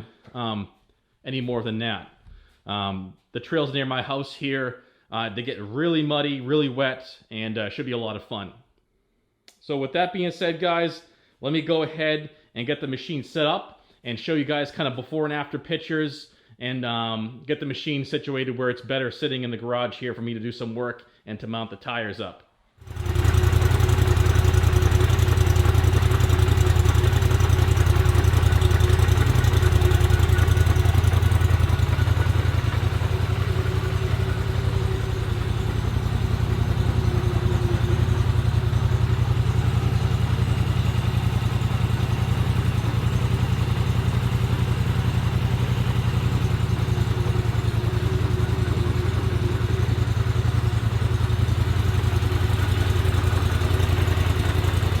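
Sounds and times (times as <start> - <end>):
atv engine idling: 22.8 - 55.0.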